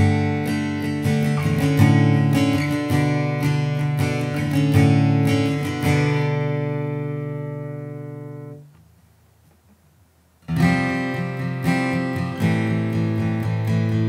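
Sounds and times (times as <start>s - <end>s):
acoustic guitar strumming: 0.0s - 9.8s, 10.4s - 14.0s.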